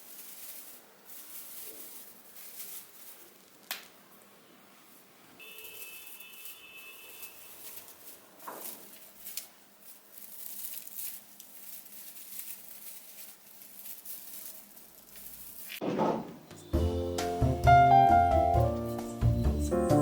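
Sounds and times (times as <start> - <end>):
faint rustling: 0.0 - 15.8.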